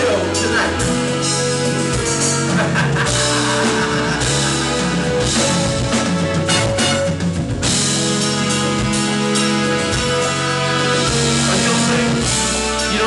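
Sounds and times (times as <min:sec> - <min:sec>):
drum kit: 0:00.0 - 0:13.0
electric guitar: 0:00.0 - 0:13.0
live rock band playing: 0:00.0 - 0:13.0.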